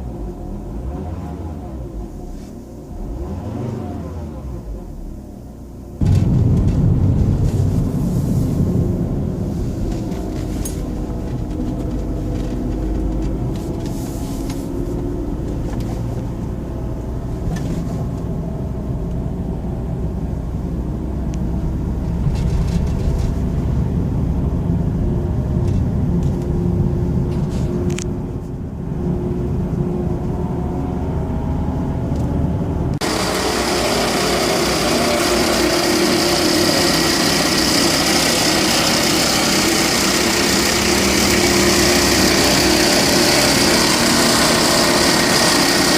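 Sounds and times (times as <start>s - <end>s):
diesel engine running: 0.0s - 45.9s
steady high whine: 32.9s - 45.9s.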